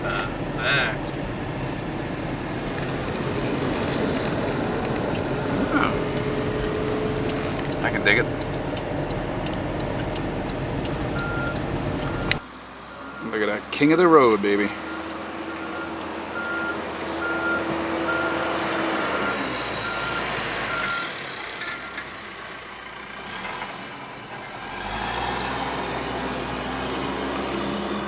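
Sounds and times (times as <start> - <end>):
vehicle road and engine noise: 0.0 - 28.0.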